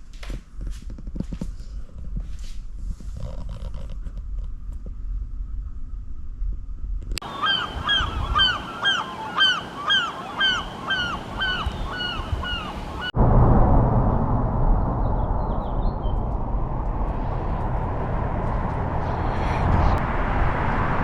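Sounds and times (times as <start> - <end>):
bird honk-like calls: 7.2 - 13.1
low rumble: 13.1 - 21.0.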